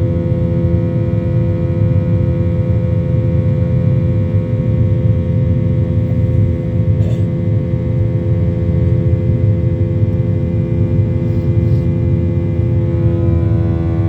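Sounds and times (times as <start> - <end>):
jet engine rumble and whine: 0.0 - 14.0.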